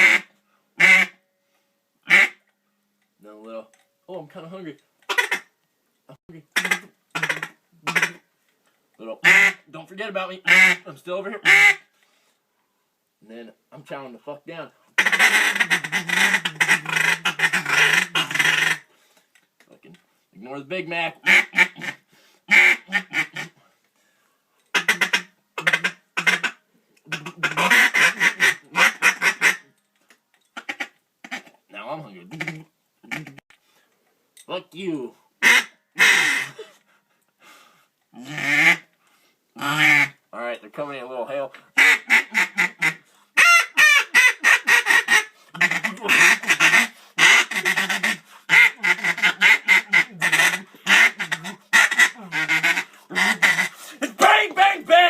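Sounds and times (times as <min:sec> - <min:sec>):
duck call quacks: 0:00.0 - 0:01.2, 0:02.1 - 0:02.4, 0:05.1 - 0:05.5, 0:06.6 - 0:08.2, 0:09.2 - 0:09.6, 0:10.4 - 0:10.8, 0:11.4 - 0:11.8, 0:15.0 - 0:18.9, 0:21.2 - 0:23.6, 0:24.7 - 0:29.7, 0:30.6 - 0:31.6, 0:32.2 - 0:33.4, 0:35.4 - 0:36.8, 0:38.2 - 0:38.9, 0:39.6 - 0:40.2, 0:41.8 - 0:55.0.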